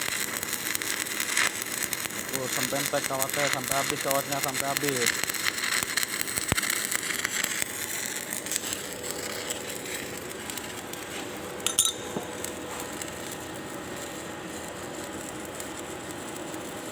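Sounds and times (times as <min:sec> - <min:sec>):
steady hiss: 0:00.0 - 0:11.6
welding arc crackling: 0:00.0 - 0:16.9
sharp metallic clink: 0:11.6 - 0:12.2.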